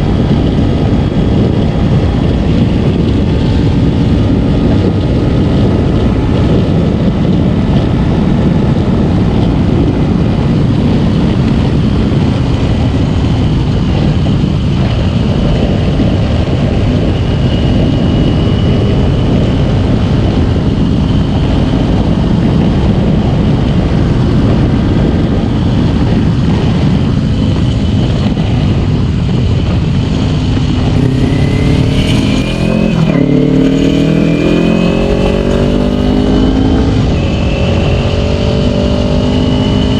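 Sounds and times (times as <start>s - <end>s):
motorcycle engine running: 0.0s - 39.9s
wind noise on microphone: 0.0s - 39.9s.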